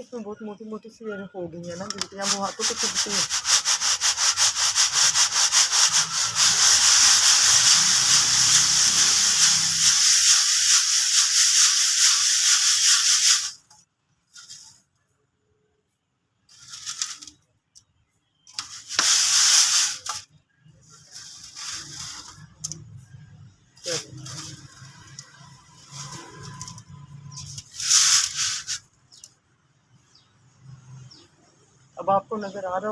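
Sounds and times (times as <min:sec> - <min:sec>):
sand rubbed through a sifter: 0:01.9 - 0:13.6, 0:14.3 - 0:14.8, 0:16.5 - 0:17.3, 0:18.6 - 0:20.3, 0:20.9 - 0:22.7, 0:23.8 - 0:29.3.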